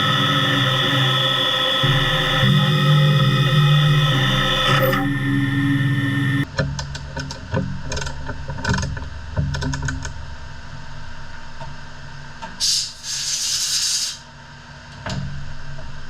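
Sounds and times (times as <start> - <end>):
low hum: 0.0 - 6.5
hiss: 12.6 - 14.3.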